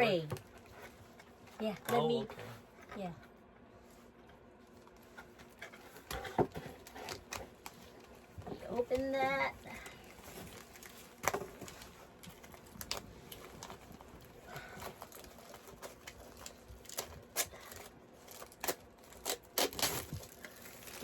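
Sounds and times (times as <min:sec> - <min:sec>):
plastic packaging crinkling: 0:06.8 - 0:21.0.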